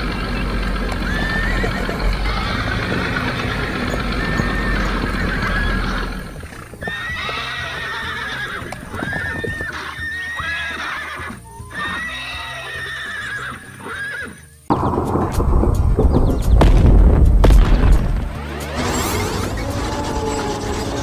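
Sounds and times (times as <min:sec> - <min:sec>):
clopping: 0:00.0 - 0:12.0, 0:14.7 - 0:21.0
background music: 0:00.4 - 0:21.0
high-pitched animal cries: 0:01.0 - 0:14.5.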